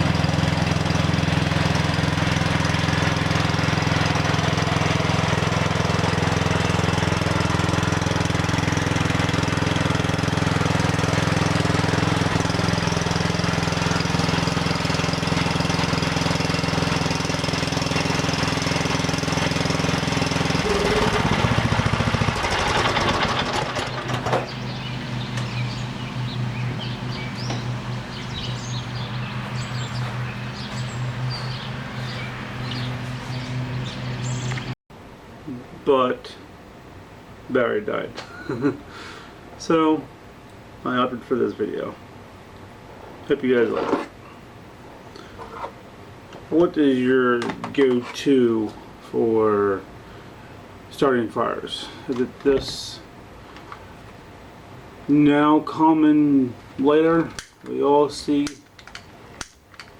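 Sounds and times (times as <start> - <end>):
engine running: 0.0 - 35.7.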